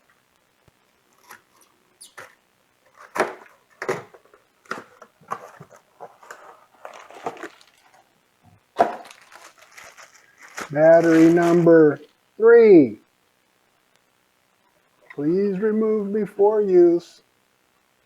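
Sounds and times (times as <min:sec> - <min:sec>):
package rustling and crinkling: 0:01.0 - 0:11.8.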